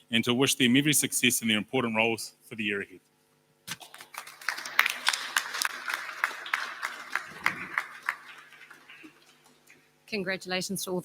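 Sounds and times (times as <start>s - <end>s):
audience applauding: 3.7s - 9.5s.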